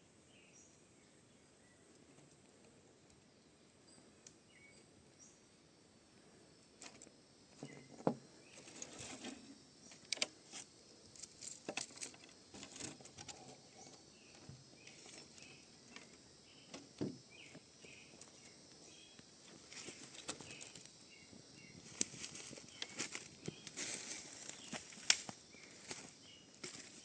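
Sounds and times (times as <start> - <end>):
faint bird chirps: 2.8 - 5.5, 7.6 - 10.1, 13.2 - 27.0
dry wood crackling and snapping: 9.9 - 17.1, 21.8 - 26.9.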